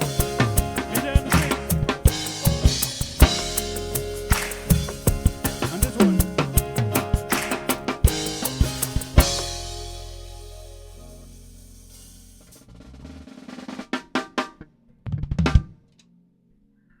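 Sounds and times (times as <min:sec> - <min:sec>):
drum kit playing: 0:00.0 - 0:14.6
low bass note: 0:08.4 - 0:12.9.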